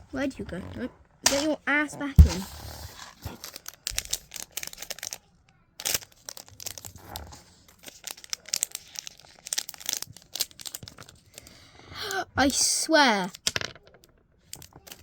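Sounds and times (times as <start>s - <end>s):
plastic bags crinkling and tearing: 2.2s - 5.2s, 5.8s - 11.5s.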